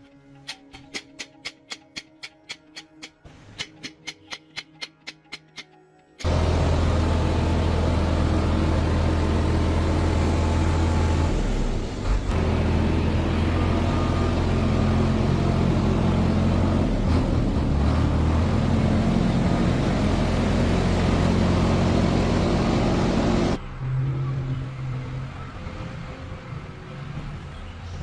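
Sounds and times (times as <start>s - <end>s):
machine humming: 6.2s - 23.6s.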